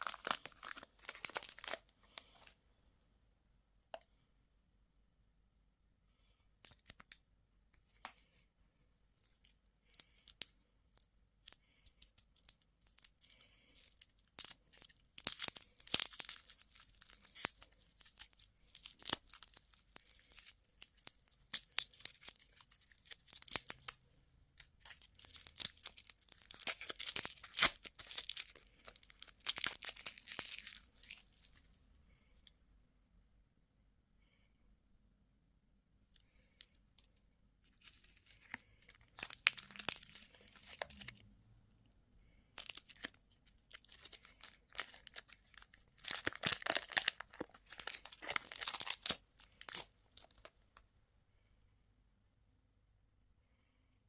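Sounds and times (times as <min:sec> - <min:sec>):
packaging torn and crinkled: 0:00.0 - 0:02.5, 0:11.5 - 0:31.7, 0:37.8 - 0:41.2, 0:42.6 - 0:50.5.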